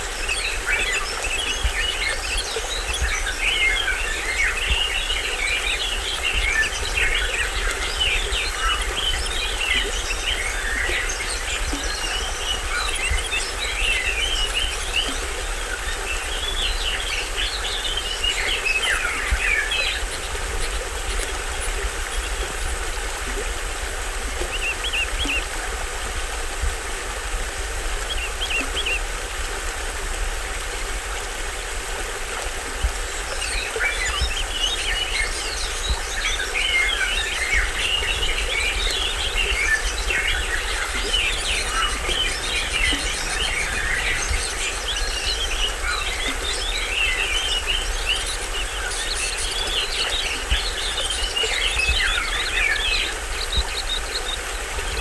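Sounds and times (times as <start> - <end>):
small waterfall running: 0.0 - 55.0
birds chattering: 35.0 - 55.0.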